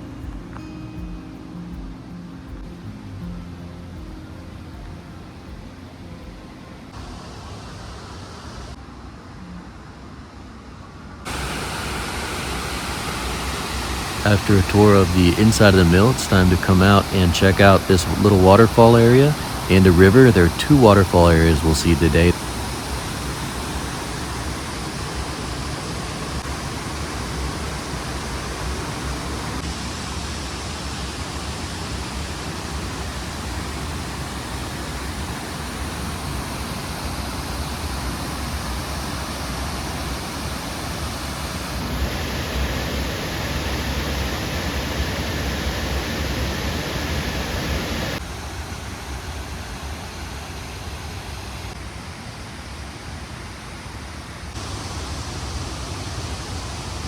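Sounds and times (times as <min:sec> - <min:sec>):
waterfall rushing: 0:11.3 - 0:48.2.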